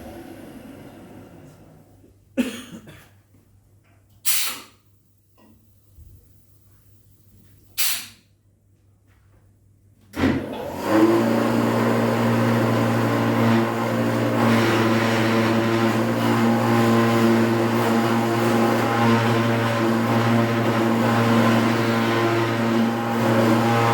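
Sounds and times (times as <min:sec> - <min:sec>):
machine motor humming: 0:10.6 - 0:23.9.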